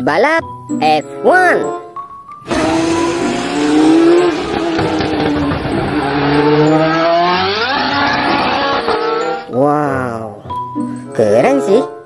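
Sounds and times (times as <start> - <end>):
racing car engine revving: 2.4 - 9.5.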